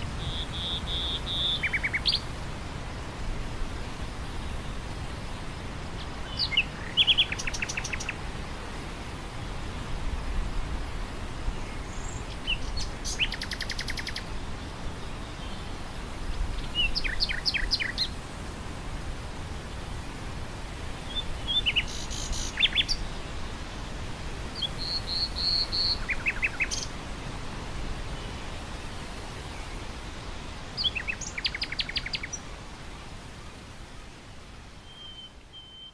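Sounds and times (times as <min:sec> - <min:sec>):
wind blowing through grass: 0:00.0 - 0:35.9
nightingale singing: 0:00.2 - 0:02.2, 0:06.0 - 0:08.2, 0:11.8 - 0:14.3, 0:16.6 - 0:18.2, 0:21.1 - 0:23.0, 0:24.6 - 0:26.9, 0:30.8 - 0:32.4, 0:34.8 - 0:35.9.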